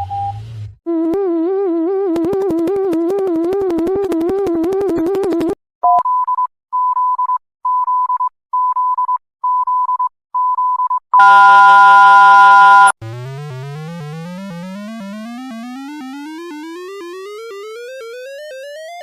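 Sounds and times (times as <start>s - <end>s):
tone climbing in steps: 1.1s - 5.6s
warbling alarm tone: 11.2s - 19.0s.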